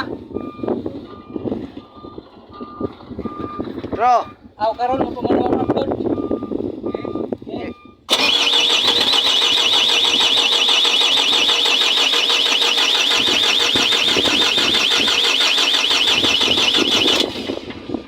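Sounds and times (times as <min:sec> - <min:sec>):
electronic alarm warbling: 0:08.2 - 0:17.2.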